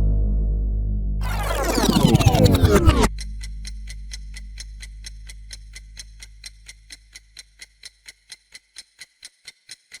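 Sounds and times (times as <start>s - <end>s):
deep low rumble: 0.0s - 3.1s
clock ticking: 1.2s - 10.0s.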